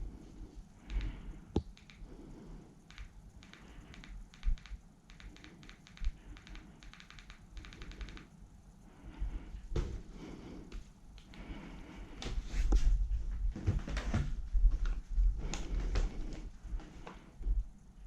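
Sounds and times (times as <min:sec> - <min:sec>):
quick light clicks and taps: 0:00.8 - 0:02.1, 0:02.9 - 0:08.3.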